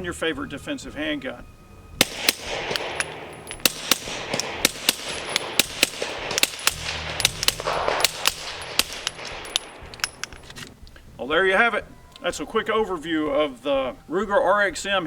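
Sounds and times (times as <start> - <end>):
suppressed pistol shots: 2.0 - 10.4.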